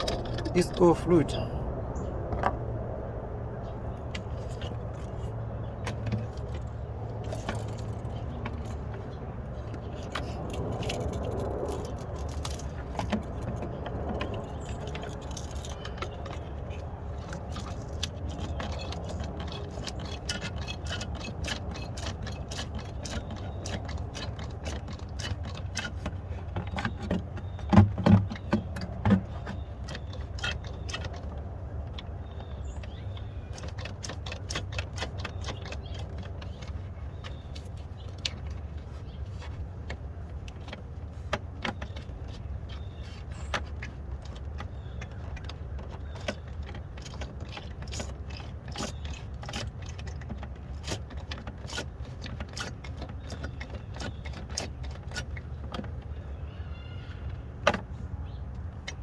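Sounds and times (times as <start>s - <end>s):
hand pump clicks and rattles: 0.0s - 1.4s, 4.0s - 56.5s, 57.1s - 59.0s
low hum: 0.0s - 18.4s.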